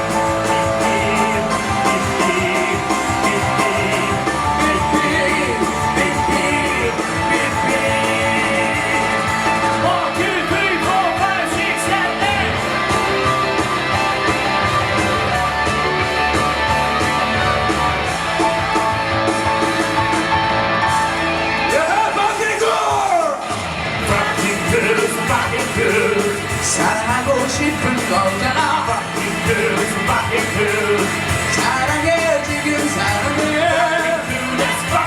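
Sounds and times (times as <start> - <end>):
person singing: 0.0 - 13.2, 21.7 - 35.0
guitar: 0.0 - 35.0
live rock song: 0.0 - 35.0.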